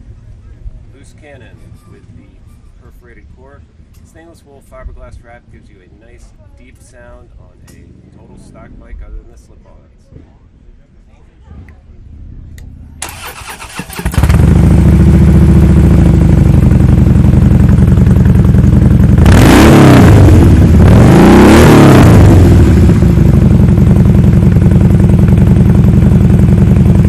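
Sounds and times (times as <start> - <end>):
motorcycle engine idling and revving: 12.6 - 27.0.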